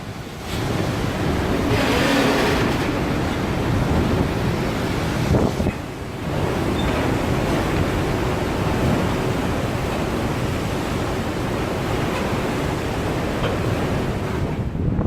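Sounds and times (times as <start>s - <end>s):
waves breaking in surf: 0.0s - 15.0s
wind: 0.0s - 15.0s.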